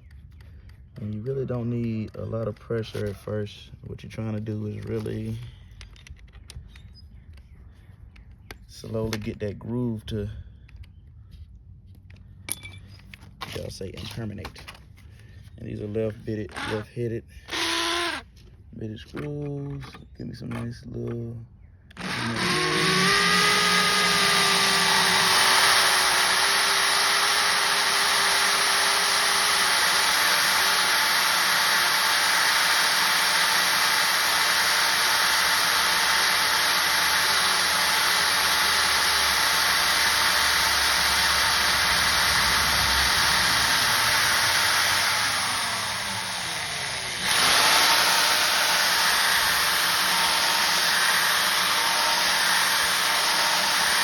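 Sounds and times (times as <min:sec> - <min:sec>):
electric drill drilling metal: 0:16.4 - 0:16.9, 0:17.5 - 0:18.3, 0:21.9 - 0:54.0.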